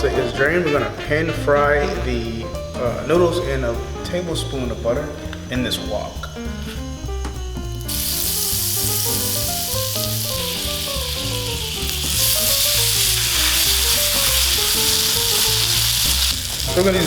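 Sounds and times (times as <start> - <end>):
background music: 0.0 - 17.0
pasta sizzling in butter: 7.7 - 17.0.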